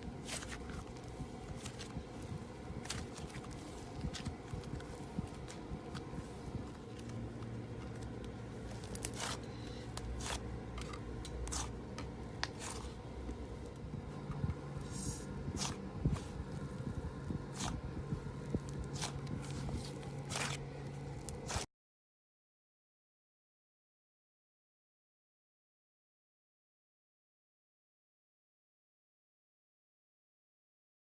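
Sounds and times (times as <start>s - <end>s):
low steady hum: 0.0s - 21.7s.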